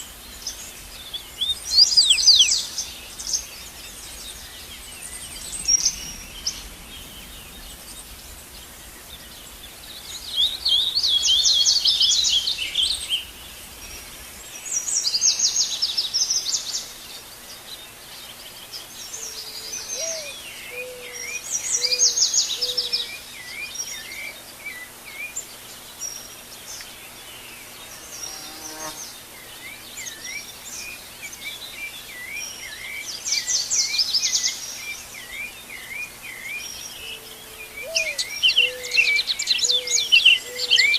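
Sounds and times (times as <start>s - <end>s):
loud high trilled birdsong: 18.4s - 40.9s.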